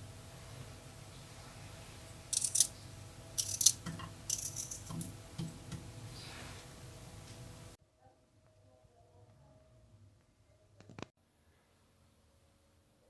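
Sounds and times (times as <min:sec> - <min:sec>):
kitchenware clinking and rattling: 0:03.4 - 0:05.6.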